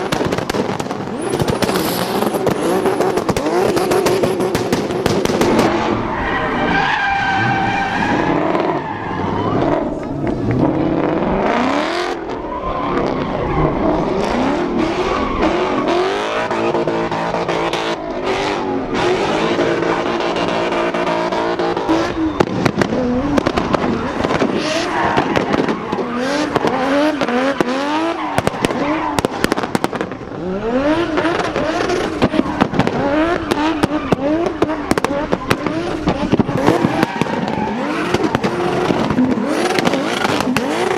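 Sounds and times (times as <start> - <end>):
exhaust pops and bangs: 0.0 - 5.9, 22.4 - 30.4, 31.2 - 40.9
car engine revving: 0.0 - 40.9.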